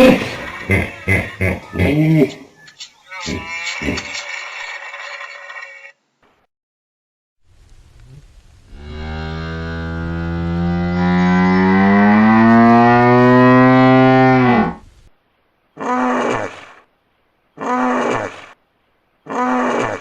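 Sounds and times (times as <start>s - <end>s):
hippopotamus bellowing and honking: 1.8s - 5.0s.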